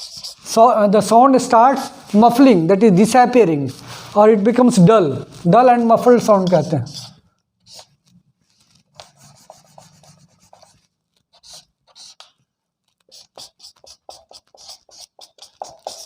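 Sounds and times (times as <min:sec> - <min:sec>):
pen scratching handwriting: 0:00.0 - 0:00.6, 0:06.0 - 0:08.2, 0:08.9 - 0:16.0.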